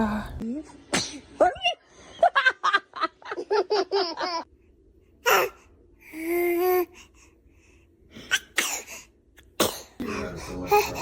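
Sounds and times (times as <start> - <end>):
baby sneezing and gasping: 8.2 - 10.0.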